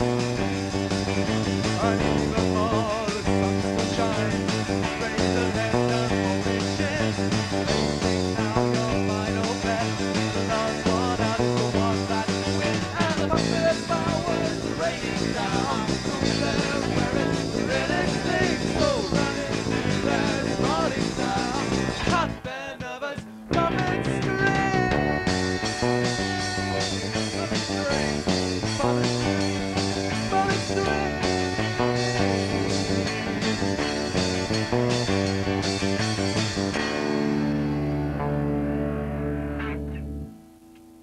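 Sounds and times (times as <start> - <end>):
repeating bass line: 0.0 - 22.5, 23.5 - 40.4
rock band playing live: 0.0 - 40.2
person singing: 1.7 - 7.3, 8.3 - 29.5, 30.1 - 33.0.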